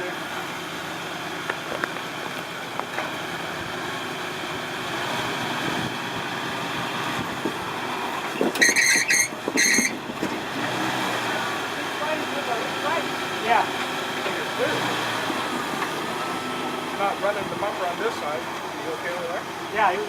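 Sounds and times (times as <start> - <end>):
engine running with knocks: 0.0 - 20.0
high-pitched squeal: 8.4 - 10.0.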